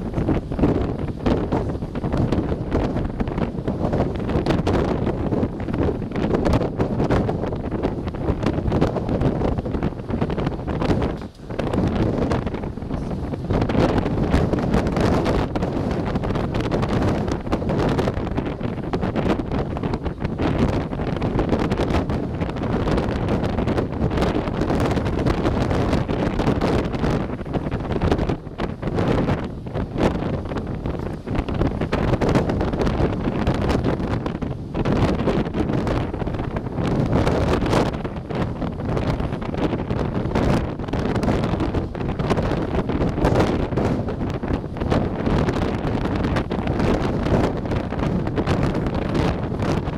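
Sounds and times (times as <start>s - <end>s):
wind buffeting microphone: 0.0s - 49.9s.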